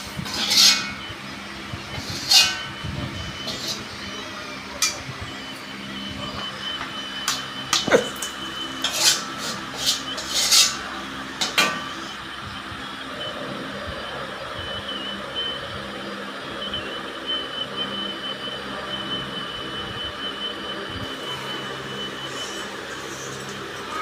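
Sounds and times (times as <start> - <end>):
metal utensil clanking on pan: 0.3 - 1.0, 2.2 - 2.7.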